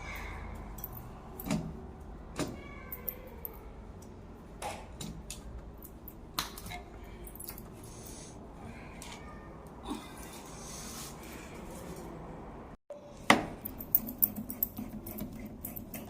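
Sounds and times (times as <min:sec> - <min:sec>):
tools clicking and knocking: 0:00.6 - 0:01.8, 0:13.3 - 0:16.0.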